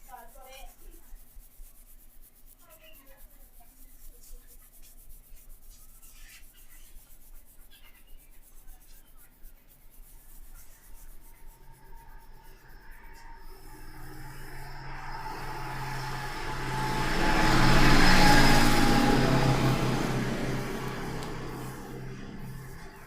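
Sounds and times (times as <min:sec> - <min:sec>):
hands rubbing hair and scalp: 0:00.0 - 0:23.0
vehicle engine hum: 0:11.2 - 0:23.0.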